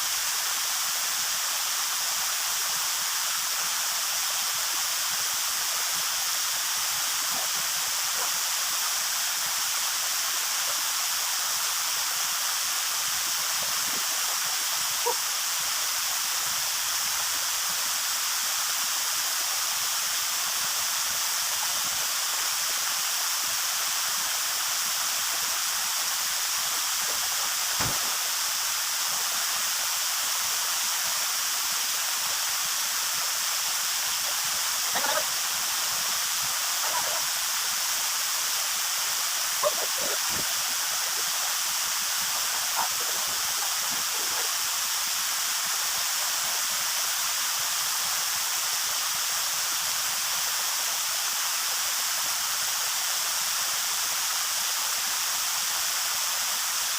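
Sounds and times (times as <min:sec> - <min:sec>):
waterfall rushing: 0:00.0 - 0:56.9
faint short knocks or splashes: 0:27.8 - 0:28.2.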